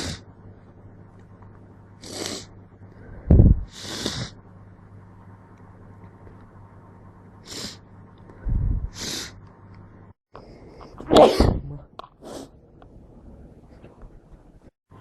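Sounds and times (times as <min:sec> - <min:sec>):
person sneezing: 0:11.0 - 0:11.6.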